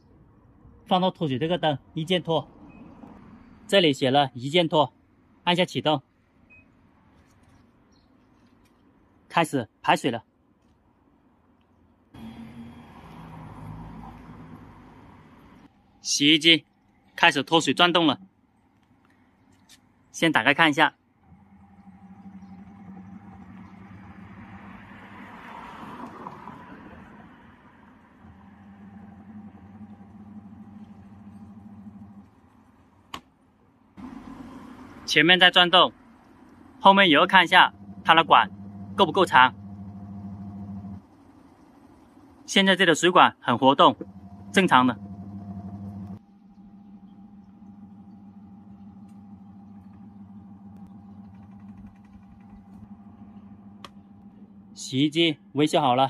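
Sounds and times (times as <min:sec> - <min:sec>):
washing machine spinning: 0:19.5 - 0:33.1, 0:34.0 - 0:56.0.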